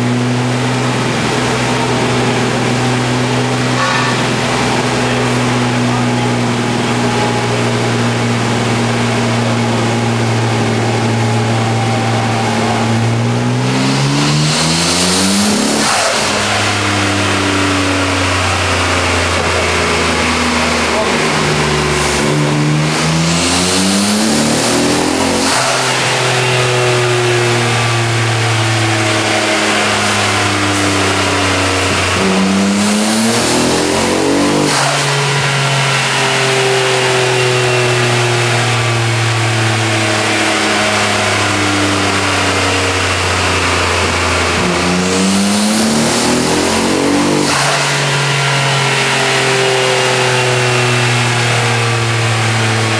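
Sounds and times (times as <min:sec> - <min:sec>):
car engine revving: 0:00.0 - 0:52.9.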